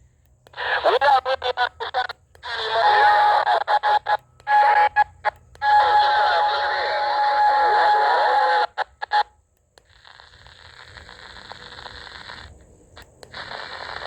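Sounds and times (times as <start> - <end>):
radio band hiss: 0.0 - 14.0
radio clicks: 0.0 - 14.0
steady radio whistle: 0.5 - 14.0
radio warbling gliding tones: 0.6 - 9.2.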